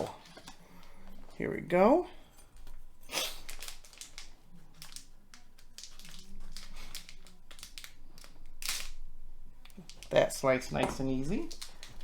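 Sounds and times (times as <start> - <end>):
plastic wrapper crinkling: 3.2 - 10.3, 11.1 - 12.0.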